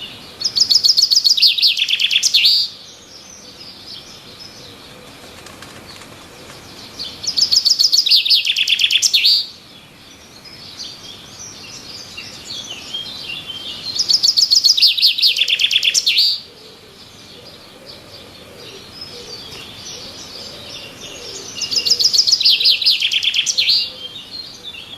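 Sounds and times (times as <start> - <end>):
bird song of rapid high notes: 0.0 - 4.6, 5.3 - 16.4, 18.9 - 24.9
soft bird chirping: 5.8 - 24.9.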